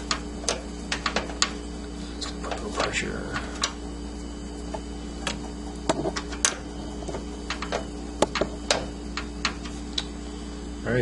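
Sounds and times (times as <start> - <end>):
metal parts clicking and tapping: 0.0 - 1.6, 5.2 - 10.1
steady low hum: 0.0 - 11.0.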